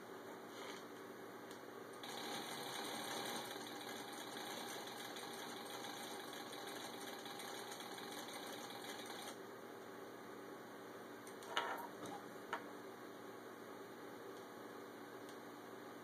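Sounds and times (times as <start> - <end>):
sewing machine motor running: 2.0 - 9.4.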